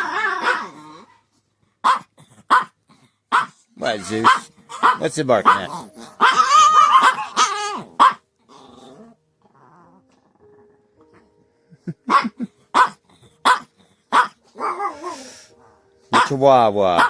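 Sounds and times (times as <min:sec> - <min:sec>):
small dog growling: 0:00.0 - 0:01.2, 0:05.7 - 0:10.7, 0:14.6 - 0:15.4
small dog barking sharply: 0:01.8 - 0:02.7, 0:03.3 - 0:03.6, 0:04.2 - 0:08.2, 0:16.1 - 0:16.3.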